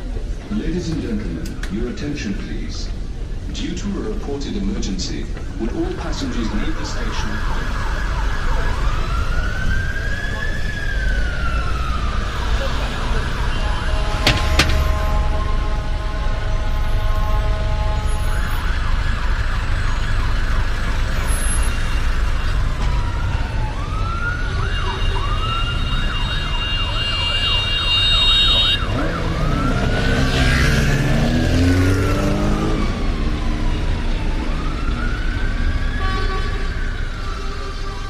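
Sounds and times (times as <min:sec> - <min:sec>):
traffic rumble: 0:00.0 - 0:38.0
sirens wailing and yelping: 0:05.5 - 0:38.0
vehicle passing close by: 0:28.8 - 0:35.2.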